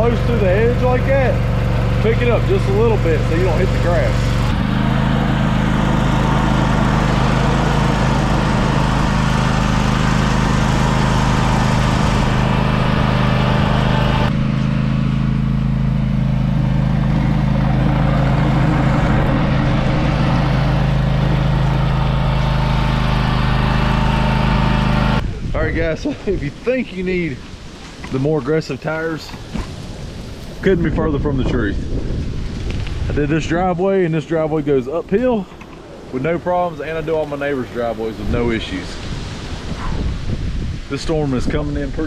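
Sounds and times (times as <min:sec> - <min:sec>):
garden tractor engine running: 0:00.0 - 0:25.2, 0:34.2 - 0:38.4.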